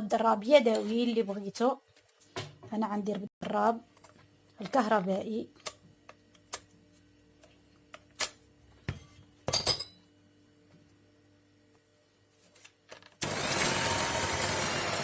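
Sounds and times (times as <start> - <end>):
electric hand mixer running: 13.2 - 15.0.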